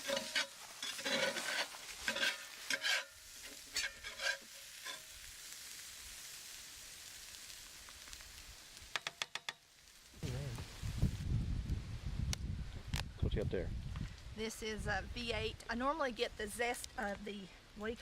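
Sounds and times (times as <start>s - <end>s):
spoon scraping skillet: 0.0s - 6.5s
meat sizzling: 0.0s - 11.2s.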